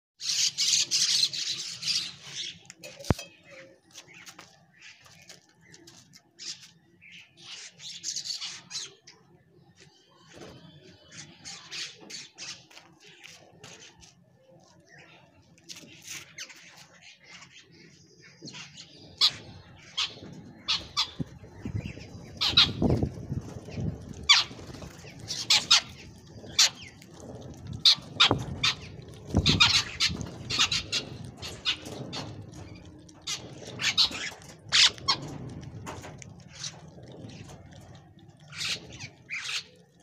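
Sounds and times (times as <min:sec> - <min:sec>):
birds squawking: 0:17.3 - 0:35.8.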